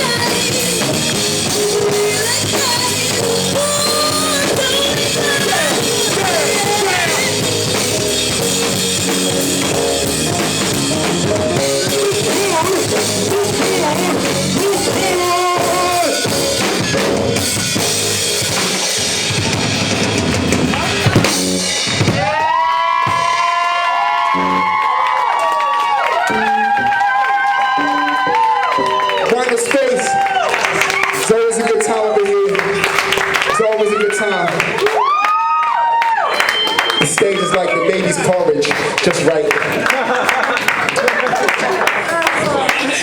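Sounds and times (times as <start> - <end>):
bass drum and snare: 0.0 - 23.6
live band playing: 0.0 - 35.1.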